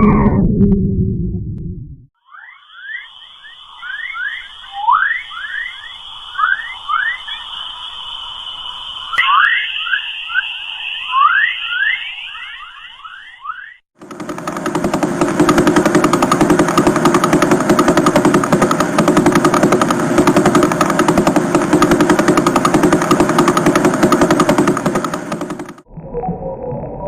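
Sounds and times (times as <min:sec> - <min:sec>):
fast pulse train rattle: 0:14.0 - 0:25.8.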